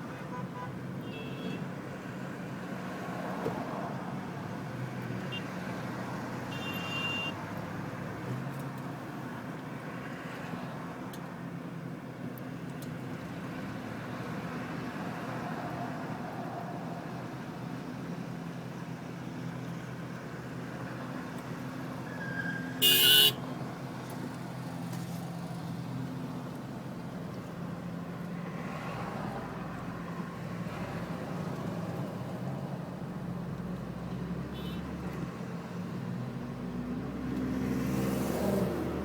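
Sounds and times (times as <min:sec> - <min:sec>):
car horn honk: 0:06.5 - 0:07.4, 0:22.8 - 0:23.4, 0:34.5 - 0:34.9.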